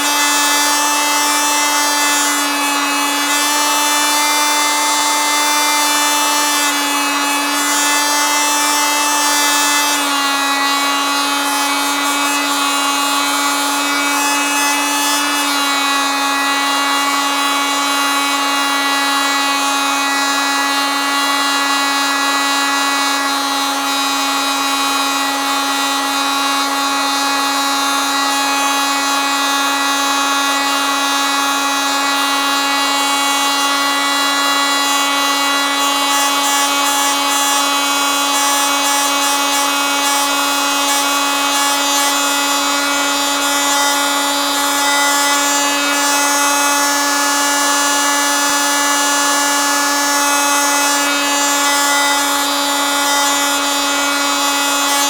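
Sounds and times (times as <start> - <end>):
oscillating multitool buzzing: 27.7 - 55.0.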